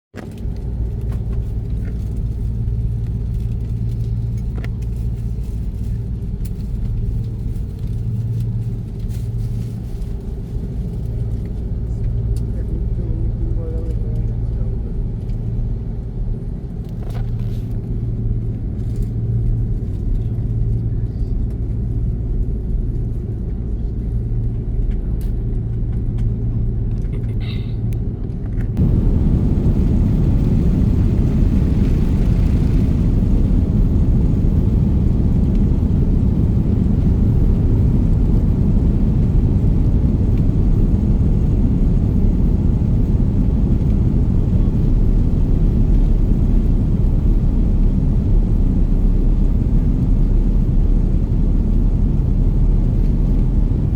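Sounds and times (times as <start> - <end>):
jet engines roaring: 28.8 - 53.9.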